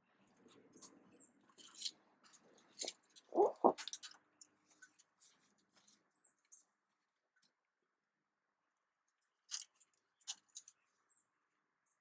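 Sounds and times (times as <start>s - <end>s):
tools clicking and scraping: 1.6s - 4.2s, 9.5s - 10.8s.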